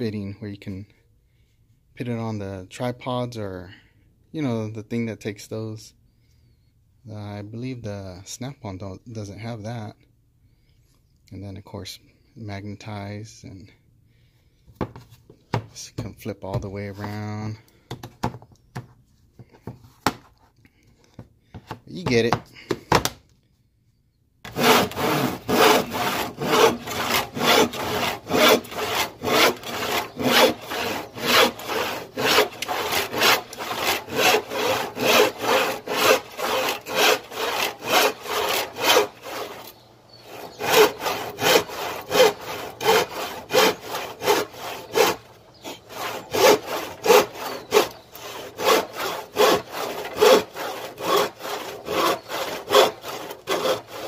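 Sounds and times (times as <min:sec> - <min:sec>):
handsaw cutting wood: 0:24.5 - 0:54.0.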